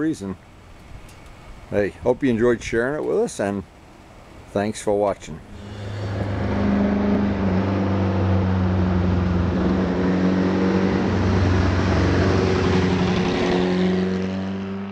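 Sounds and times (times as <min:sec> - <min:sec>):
wind and road noise: 0:00.0 - 0:14.9
motorcycle engine drone: 0:05.4 - 0:14.9.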